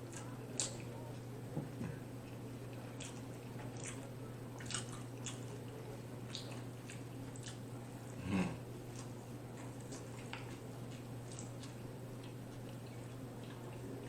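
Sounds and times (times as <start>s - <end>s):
steady low hum: 0.0s - 14.0s
wet chewing mouth sounds: 0.0s - 14.0s
throat sound: 8.2s - 8.7s.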